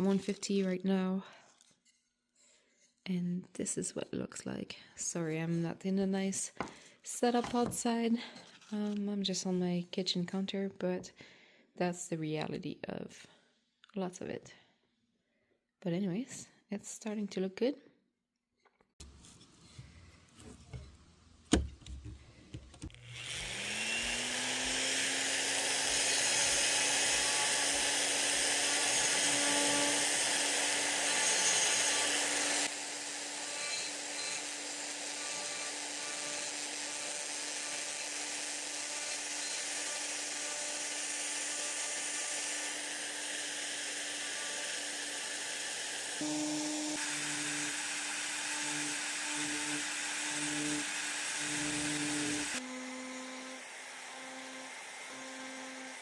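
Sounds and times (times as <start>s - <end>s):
power tool grinding wood: 22.9s - 56.0s.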